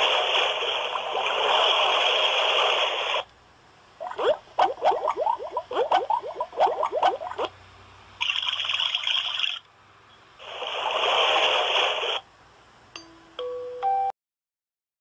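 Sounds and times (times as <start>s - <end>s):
hiss like running water: 0.0s - 3.3s, 10.4s - 12.3s
hissing nature sound clip: 7.7s - 12.3s
electronic melody beeps: 13.0s - 14.1s.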